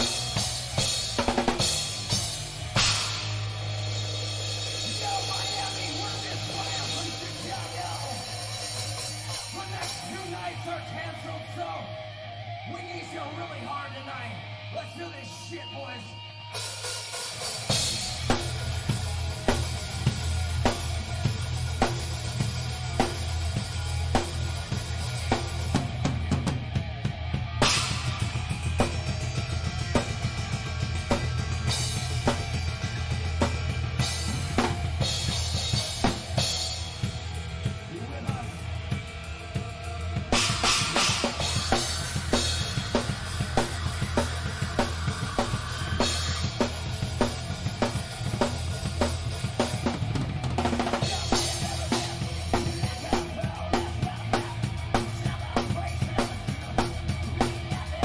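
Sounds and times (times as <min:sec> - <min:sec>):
crash cymbals: 0:00.0 - 0:09.6
cymbal crashes: 0:00.0 - 0:09.6, 0:27.6 - 0:29.0, 0:40.4 - 0:48.8
bass and guitars: 0:00.0 - 0:58.0
rock band playing: 0:00.0 - 0:58.0.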